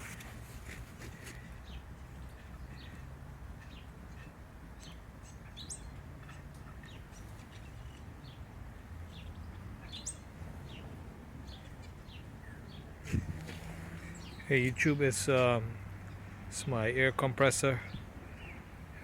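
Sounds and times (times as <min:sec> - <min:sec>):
birds chirping: 0:01.4 - 0:03.0, 0:09.1 - 0:19.0.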